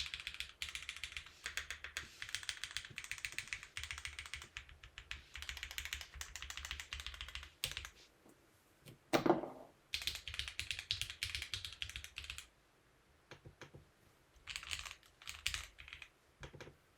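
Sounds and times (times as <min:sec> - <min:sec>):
mechanical keyboard typing: 0:00.0 - 0:08.0, 0:09.9 - 0:12.5, 0:14.4 - 0:16.7.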